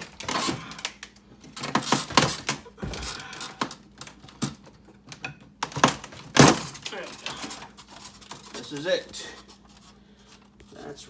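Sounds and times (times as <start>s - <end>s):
plastic panels clicking and knocking: 0.0s - 7.6s.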